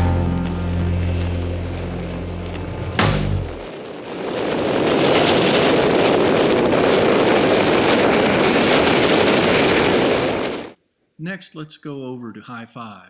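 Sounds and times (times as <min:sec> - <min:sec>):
skis on snow: 0:00.0 - 0:10.8
wind rushing on microphone: 0:00.8 - 0:10.8.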